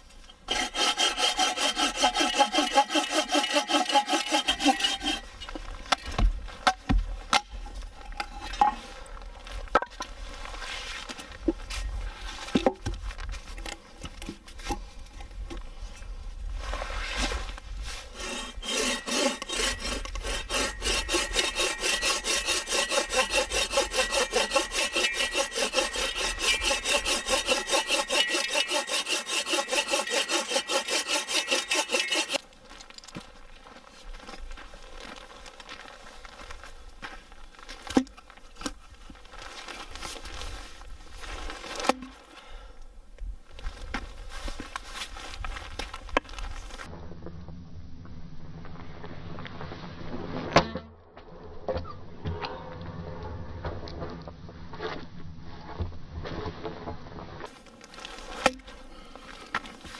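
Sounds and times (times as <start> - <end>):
hand saw cutting wood: 0.5 - 5.3, 18.1 - 32.4.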